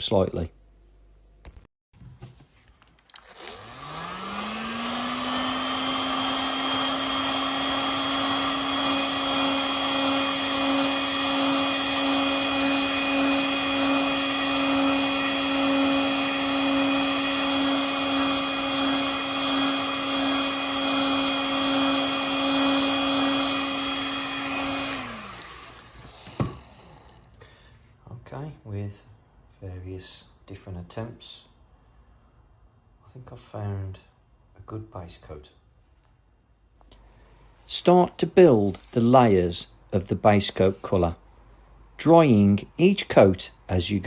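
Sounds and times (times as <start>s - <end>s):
hot-air blower fan motor: 3.1s - 27.4s.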